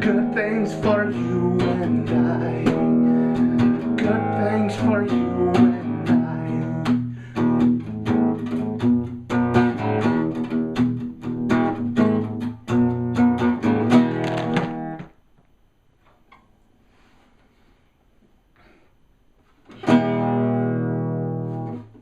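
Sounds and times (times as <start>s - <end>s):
acoustic guitar strumming chords: 0.0s - 15.1s, 19.7s - 22.0s.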